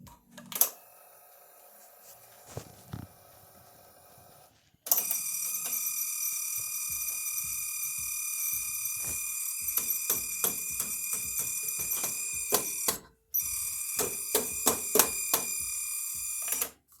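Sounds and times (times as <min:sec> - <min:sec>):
high-pitched whine: 0:05.2 - 0:16.5
scattered clicks and knocks: 0:09.0 - 0:13.1, 0:14.0 - 0:15.6.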